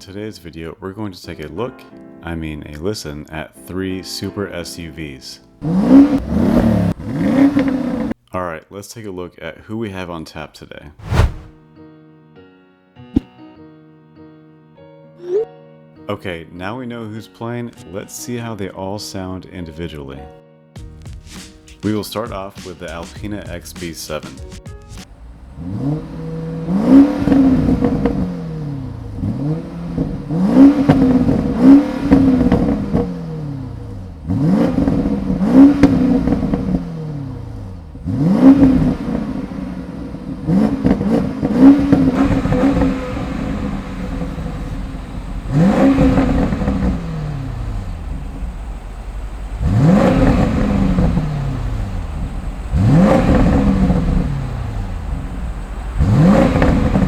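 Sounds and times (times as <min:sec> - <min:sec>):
car engine revving: 0:05.6 - 0:08.2, 0:11.0 - 0:11.6, 0:24.9 - 0:57.0.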